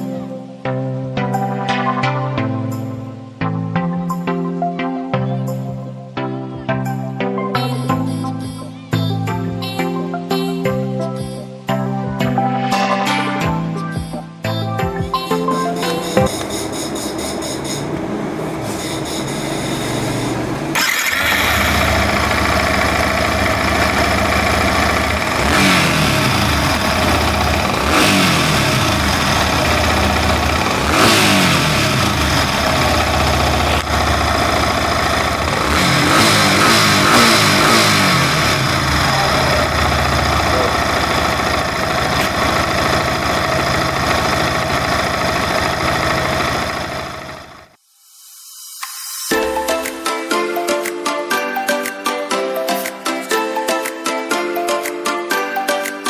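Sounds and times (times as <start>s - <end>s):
motorcycle engine idling and revving: 16.0s - 47.8s.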